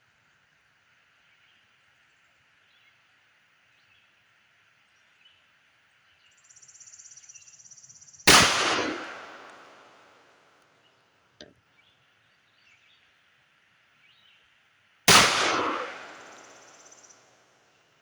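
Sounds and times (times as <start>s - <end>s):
pistol shot with echo: 8.3s - 10.2s, 15.1s - 17.1s.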